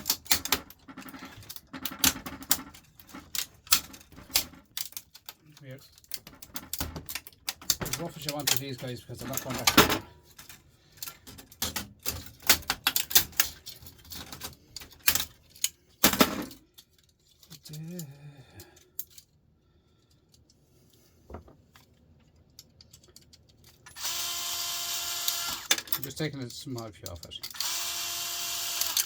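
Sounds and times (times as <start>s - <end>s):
printer parts clicking and clattering: 0.0s - 18.1s, 25.3s - 27.8s.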